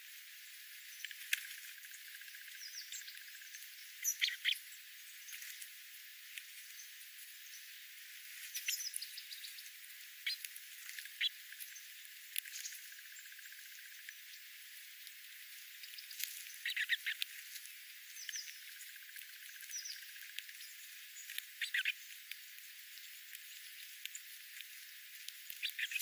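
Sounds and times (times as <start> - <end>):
songbirds chirping: 0.7 - 26.0.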